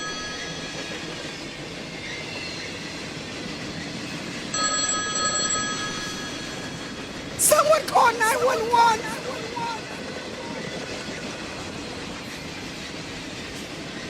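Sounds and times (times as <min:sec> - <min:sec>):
telephone ringing: 0:04.5 - 0:08.6.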